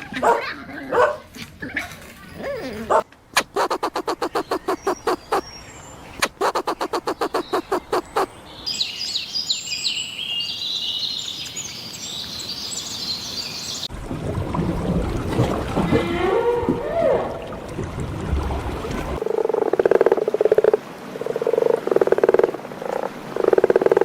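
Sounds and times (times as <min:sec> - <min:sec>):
birds chirping: 0:02.1 - 0:13.9
rapid rasping pulses: 0:03.4 - 0:05.5, 0:06.2 - 0:08.3.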